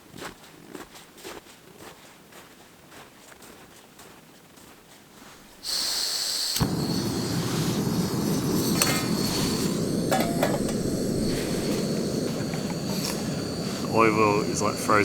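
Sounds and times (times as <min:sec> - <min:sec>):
gas hissing from burner: 0:05.4 - 0:15.0
gas stove burning roar: 0:05.4 - 0:15.0
igniter click: 0:06.4 - 0:15.0.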